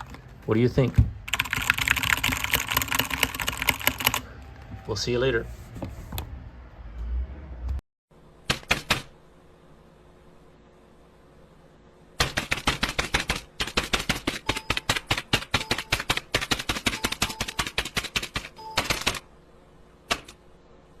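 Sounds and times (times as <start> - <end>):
fast typing on mechanical keyboard: 1.3 - 4.2, 12.2 - 19.2.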